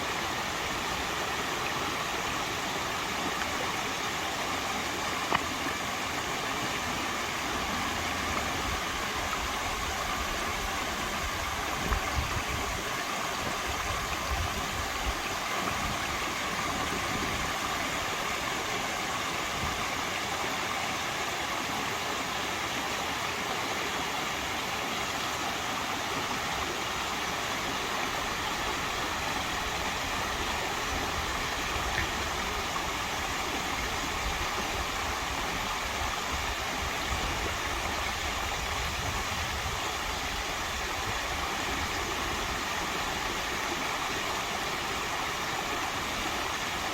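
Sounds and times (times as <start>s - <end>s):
stream flowing: 0.0s - 46.9s.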